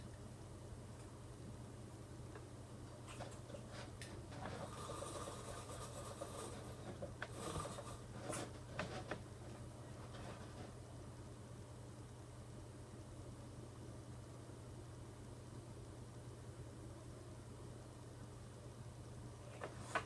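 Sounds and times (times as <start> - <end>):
low steady hum: 0.0 - 20.0
light rubbing and scraping: 3.1 - 9.2, 9.9 - 10.8.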